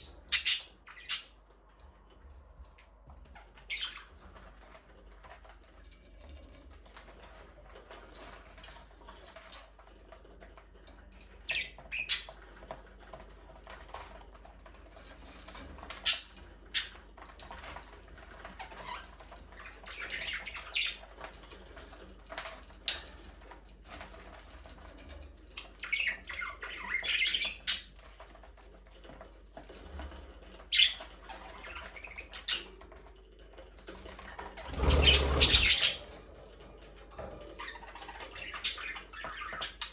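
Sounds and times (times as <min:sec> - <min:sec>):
budgerigars squawking and chirping: 0:34.7 - 0:36.1.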